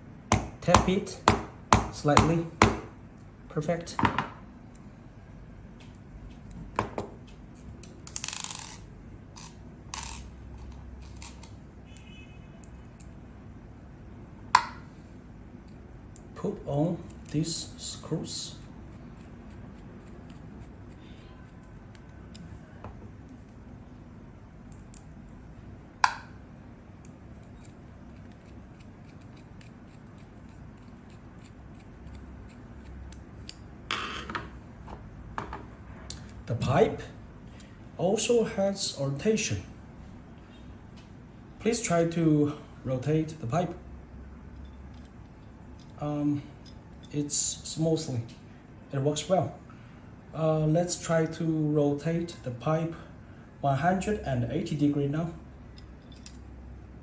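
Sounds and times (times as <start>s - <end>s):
metal parts clinking on hard surface: 55.7s - 56.5s.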